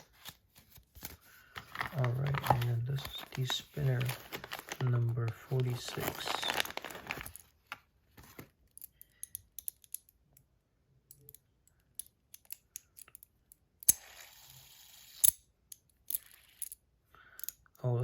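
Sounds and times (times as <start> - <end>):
packaging clicks and taps: 1.0 - 8.8.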